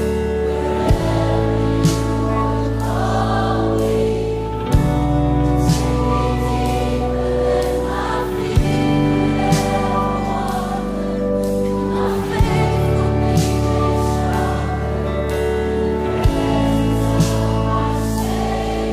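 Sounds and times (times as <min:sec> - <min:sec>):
slow worship music: 0:00.0 - 0:18.9.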